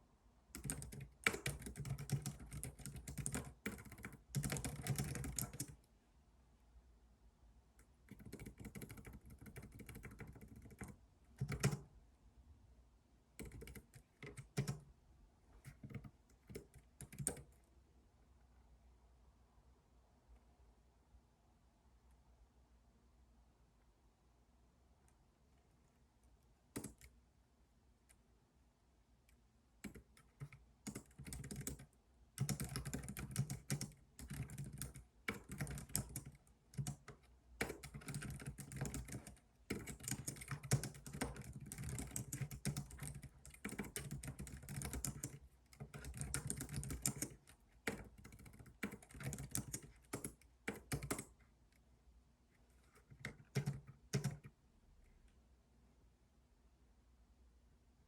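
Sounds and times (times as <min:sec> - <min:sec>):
typing on computer keyboard: 0:00.5 - 0:05.8, 0:08.0 - 0:11.9, 0:13.4 - 0:14.9, 0:15.6 - 0:17.6, 0:26.7 - 0:27.1, 0:29.8 - 0:51.4, 0:52.8 - 0:54.6.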